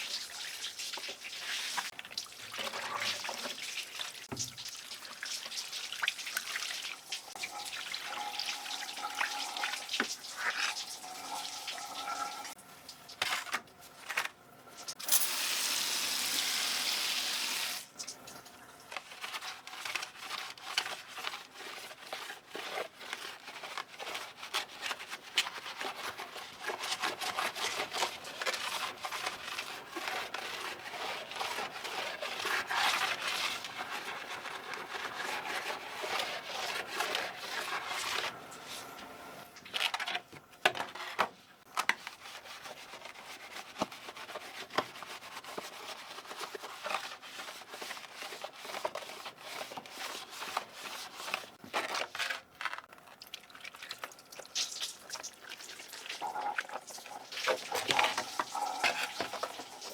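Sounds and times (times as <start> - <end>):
rubbing and scraping a keyboard: 19.0 - 38.9, 39.7 - 53.2, 56.0 - 59.9.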